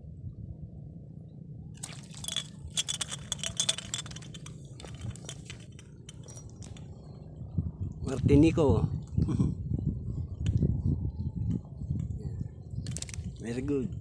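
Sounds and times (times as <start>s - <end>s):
fishing tackle clicking: 1.8s - 6.9s, 12.9s - 13.3s.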